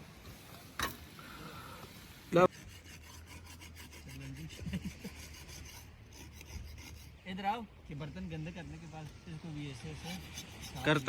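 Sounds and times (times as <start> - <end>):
scratchy scraping strokes: 2.3 - 7.4, 9.7 - 11.0.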